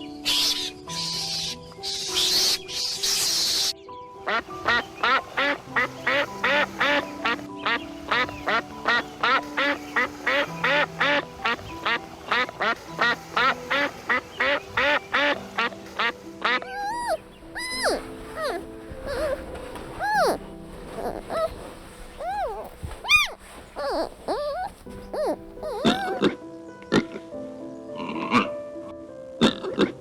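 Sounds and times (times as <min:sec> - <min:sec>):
duck quacking: 0:12.3 - 0:19.4, 0:20.0 - 0:20.4, 0:21.0 - 0:21.5, 0:22.2 - 0:26.2.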